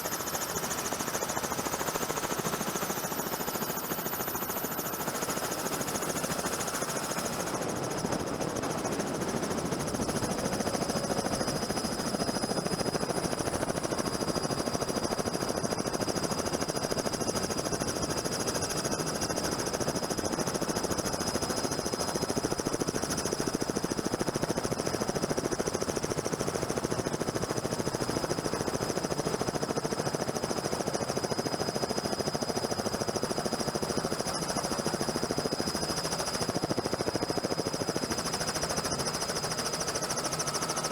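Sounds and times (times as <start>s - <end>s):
helicopter rotor chopping: 0.0s - 20.4s, 28.9s - 40.9s.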